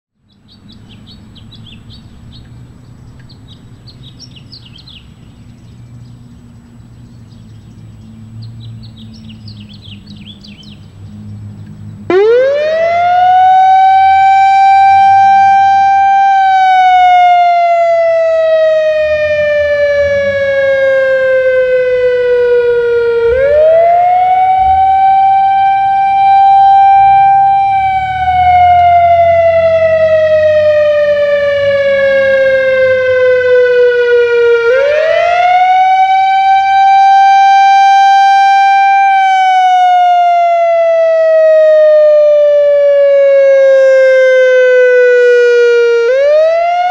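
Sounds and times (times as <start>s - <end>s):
warning siren wailing: 12.0s - 46.9s.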